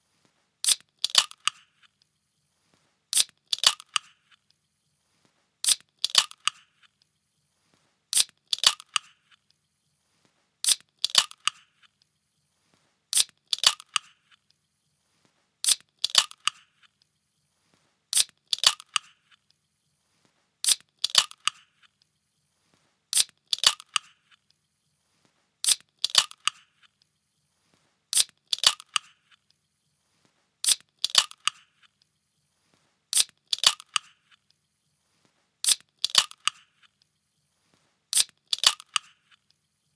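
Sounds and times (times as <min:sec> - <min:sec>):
can opening cracks: 0:03.2 - 0:04.0, 0:08.2 - 0:09.1, 0:13.2 - 0:14.1, 0:18.2 - 0:19.1, 0:23.2 - 0:24.1, 0:25.6 - 0:26.6, 0:28.2 - 0:29.1, 0:30.6 - 0:31.6, 0:33.2 - 0:34.1, 0:35.7 - 0:36.6, 0:38.2 - 0:39.1.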